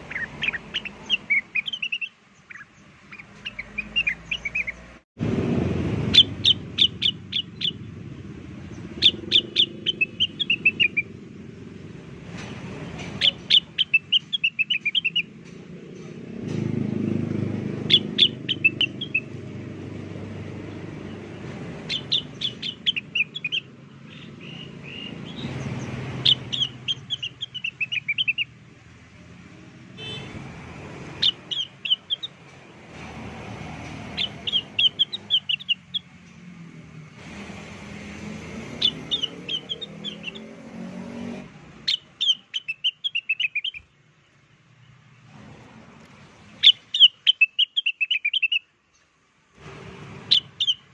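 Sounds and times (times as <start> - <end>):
bird singing high chattering trill: 0.0 - 5.0, 6.1 - 11.6, 13.2 - 15.4, 17.8 - 19.9, 20.7 - 28.6, 31.2 - 32.5, 33.9 - 36.4, 38.7 - 40.6, 41.9 - 44.0, 46.6 - 49.1, 50.3 - 50.9.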